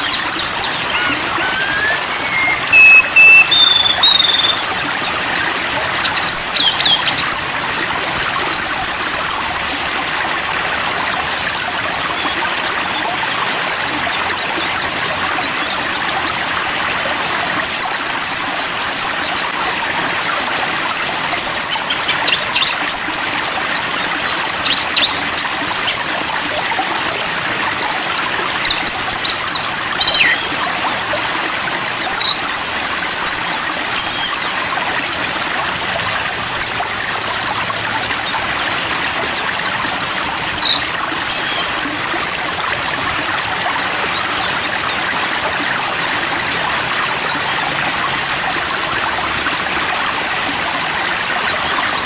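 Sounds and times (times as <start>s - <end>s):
songbird chirps and whistles: 0.0s - 4.7s
flowing water: 0.0s - 52.0s.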